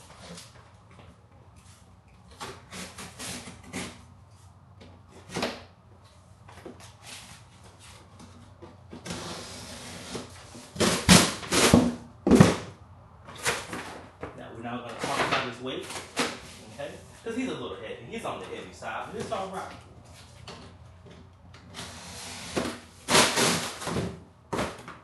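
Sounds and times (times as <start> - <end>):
cardboard rasp: 2.6 - 4.0, 21.8 - 24.8.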